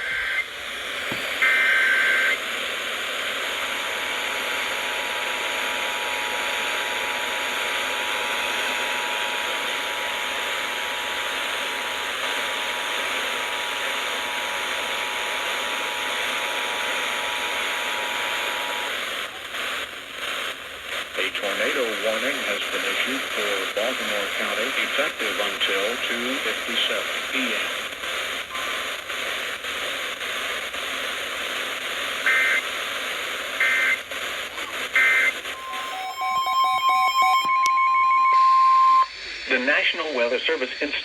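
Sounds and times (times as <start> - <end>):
radio static hiss: 0.0 - 37.8, 39.0 - 41.0
screeching data header: 34.6 - 39.6
two-tone attention signal: 35.0 - 39.1.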